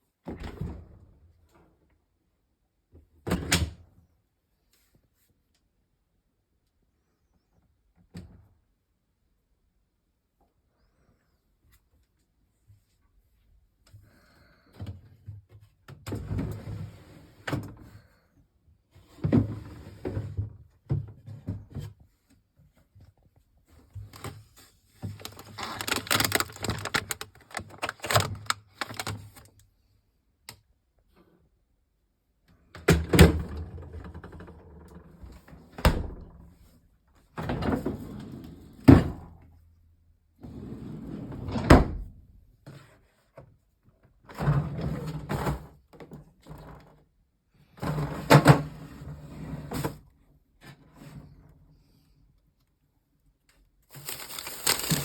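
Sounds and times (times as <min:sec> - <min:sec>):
refrigerator doors rattling: 0:25.1 - 0:29.4.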